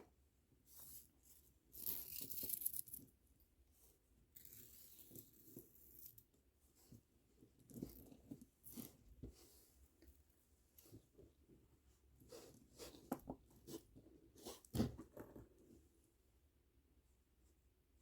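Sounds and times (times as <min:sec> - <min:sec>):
string rustling through beads: 0:00.6 - 0:10.0.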